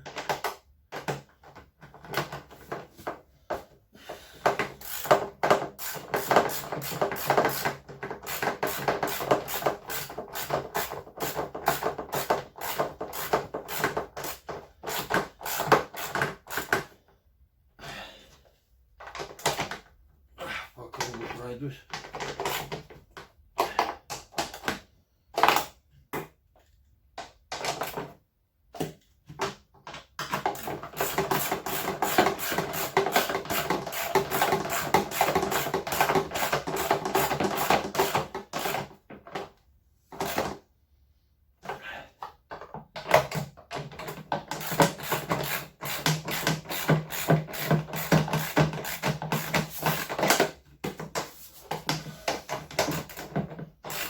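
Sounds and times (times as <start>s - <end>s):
screwdriver ratcheting clicks: 43.9s - 50.5s.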